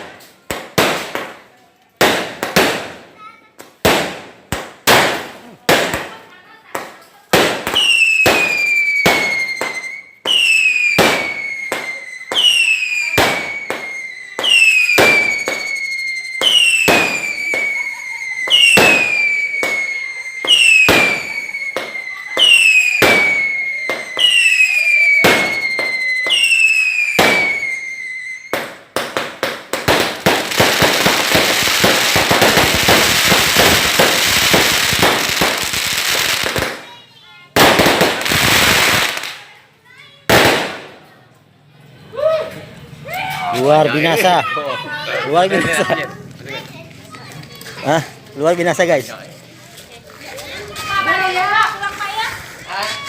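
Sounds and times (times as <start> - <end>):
firework bangs: 0.0 - 41.3
firework crackling: 0.0 - 41.4, 42.0 - 53.0
firework whistles: 7.6 - 36.9.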